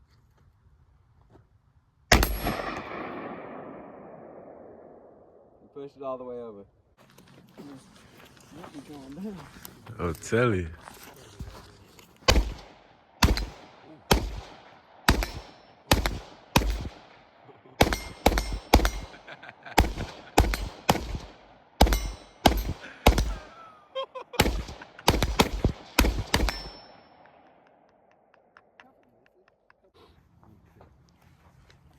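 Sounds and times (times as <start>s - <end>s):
rifle shots with echo: 2.1s - 5.7s, 12.3s - 23.6s, 24.4s - 28.1s.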